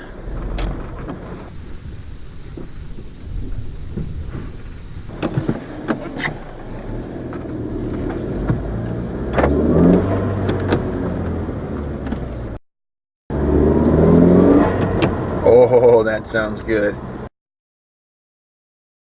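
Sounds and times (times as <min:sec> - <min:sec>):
car engine accelerating: 0:00.0 - 0:01.5, 0:05.1 - 0:12.6, 0:13.3 - 0:17.3.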